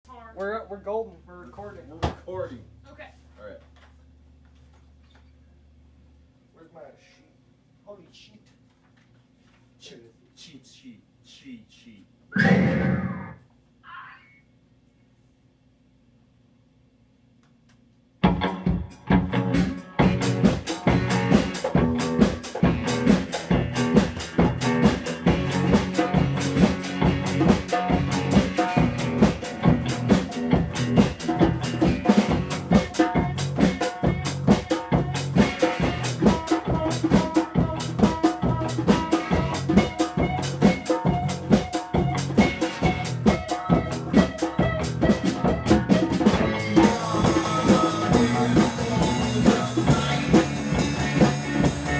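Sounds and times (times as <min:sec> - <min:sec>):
drum kit rock beat: 0:18.2 - 0:51.9.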